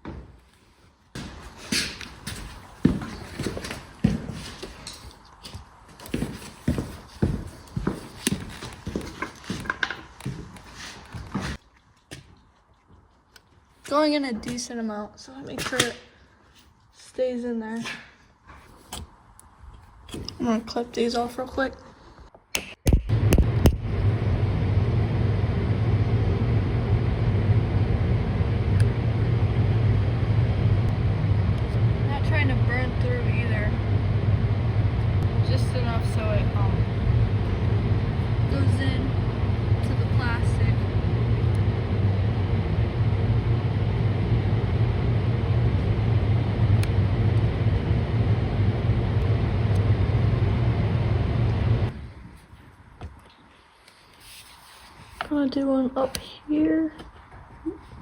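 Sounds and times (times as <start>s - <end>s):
welding gun buzzing: 23.1s - 51.9s.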